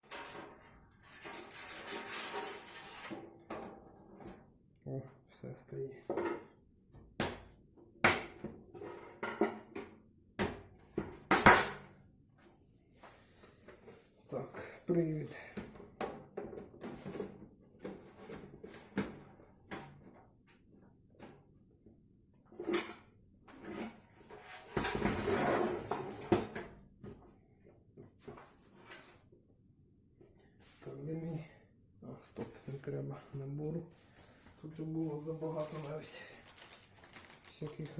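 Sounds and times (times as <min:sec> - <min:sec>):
rustling packaging: 0:35.2 - 0:37.9.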